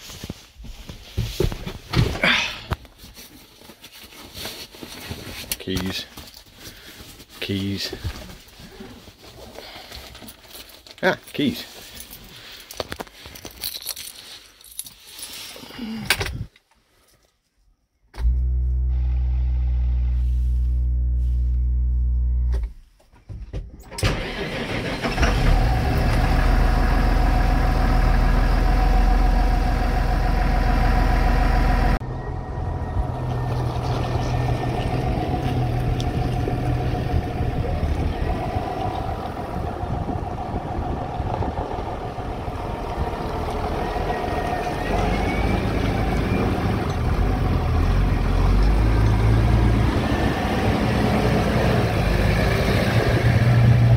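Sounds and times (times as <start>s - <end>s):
tractor starter hum: 23.8s - 48.0s
diesel engine catching and running: 23.9s - 53.9s.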